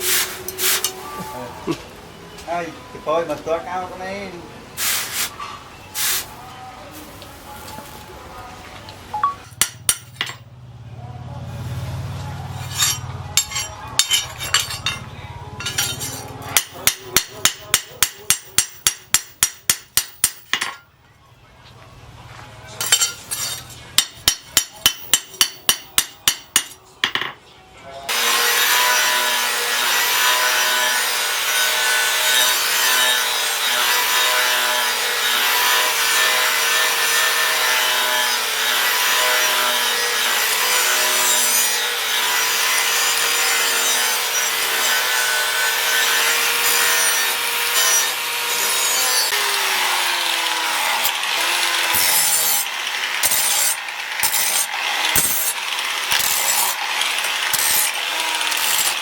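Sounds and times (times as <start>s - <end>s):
hammer strikes: 9.2s - 10.5s, 12.6s - 20.9s, 22.8s - 27.4s, 53.2s - 56.4s
power grinder grinding: 28.1s - 59.0s.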